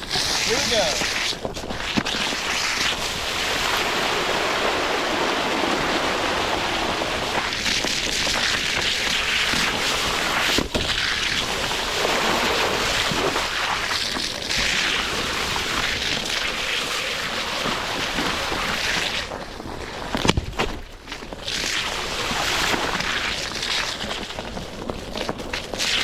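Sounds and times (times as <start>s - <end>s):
tire splashing through water: 0.0s - 26.0s.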